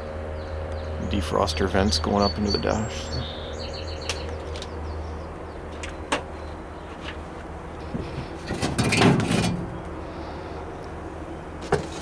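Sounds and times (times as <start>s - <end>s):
door rattling and scraping: 5.8s - 10.0s, 11.6s - 12.0s.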